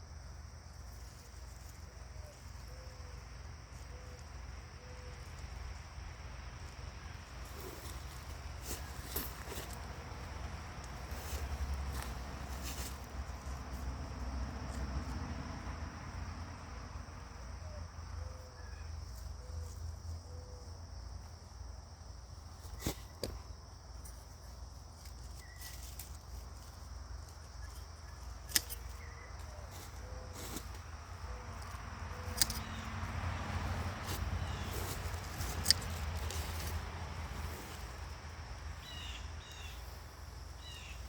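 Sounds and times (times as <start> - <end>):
high insect trill: 0.0 - 41.0
faint bird chirps: 38.8 - 39.8.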